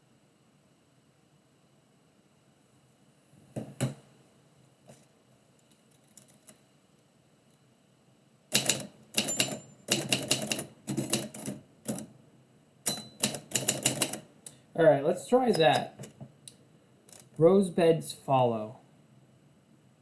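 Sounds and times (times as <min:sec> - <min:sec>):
typewriter keys striking: 0:08.5 - 0:12.1, 0:12.9 - 0:14.2.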